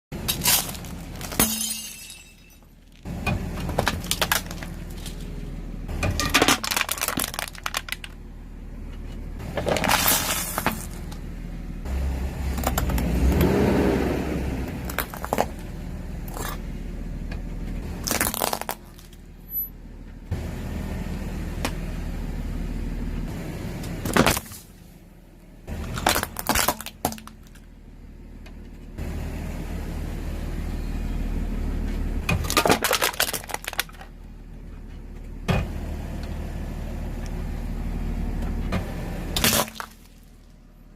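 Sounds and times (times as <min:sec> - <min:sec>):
car engine running: 0:00.1 - 0:40.9
rumble: 0:00.1 - 0:40.9
objects cracking under tyres: 0:00.2 - 0:01.6, 0:02.6 - 0:08.2, 0:09.5 - 0:11.2, 0:14.8 - 0:15.7, 0:17.9 - 0:19.3, 0:24.0 - 0:24.8, 0:25.7 - 0:27.7, 0:32.3 - 0:34.2, 0:39.4 - 0:40.6.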